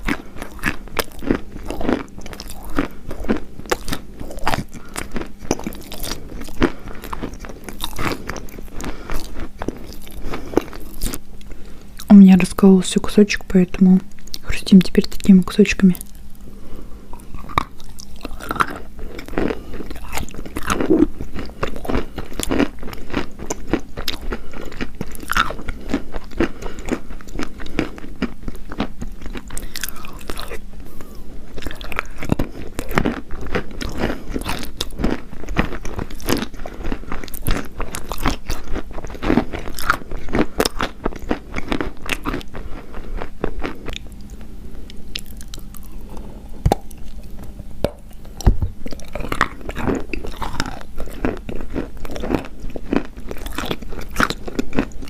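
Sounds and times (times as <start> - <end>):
chalk crunching as chewed: 0.0 - 12.2, 17.1 - 55.0.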